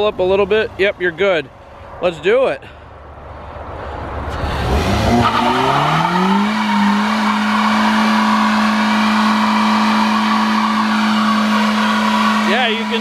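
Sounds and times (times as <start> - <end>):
car engine revving: 4.1 - 13.0
tyres spinning with squealing hiss: 5.1 - 13.0.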